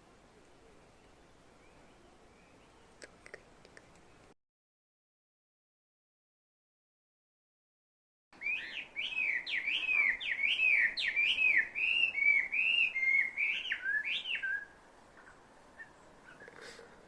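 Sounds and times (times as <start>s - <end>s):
bird whistling calls: 8.4s - 14.8s.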